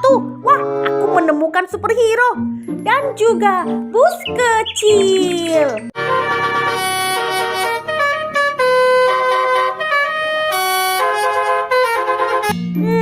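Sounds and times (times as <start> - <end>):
upbeat music with brass lead: 6.0 - 12.7.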